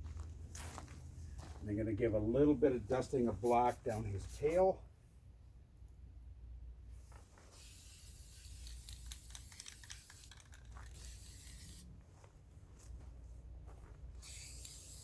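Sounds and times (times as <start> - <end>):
spray paint hissing: 3.1 - 4.7, 7.5 - 12.0, 14.2 - 15.0.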